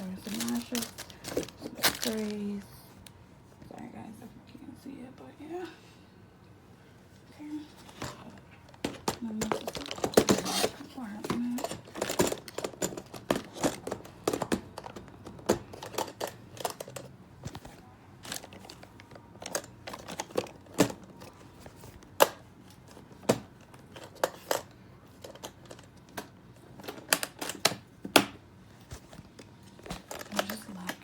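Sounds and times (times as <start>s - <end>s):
makeup items clicking and tapping: 8.0s - 21.3s, 29.2s - 31.0s.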